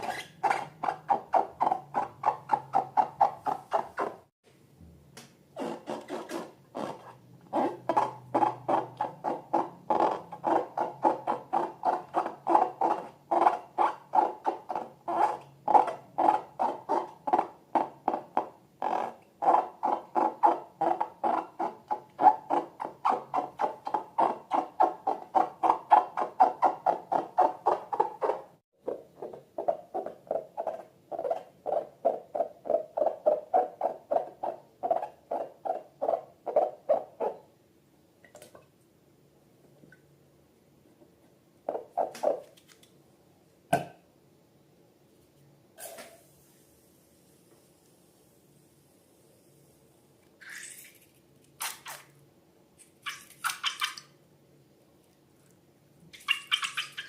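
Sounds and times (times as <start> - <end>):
squeaky slime squelches: 0.0 - 4.3, 5.5 - 37.5, 41.6 - 42.6, 50.4 - 52.2, 52.8 - 54.2, 56.1 - 57.0.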